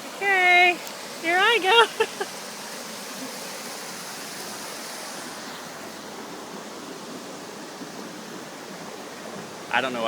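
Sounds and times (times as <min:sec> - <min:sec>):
waterfall and stream rushing: 0:00.0 - 0:10.0.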